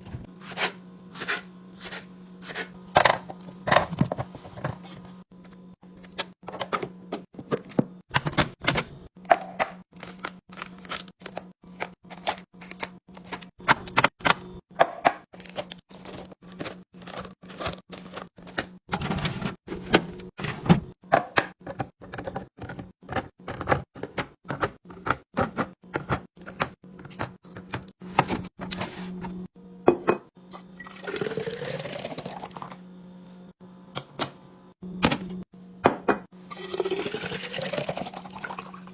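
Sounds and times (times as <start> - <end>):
containers clicking and clinking: 36.0 - 38.9.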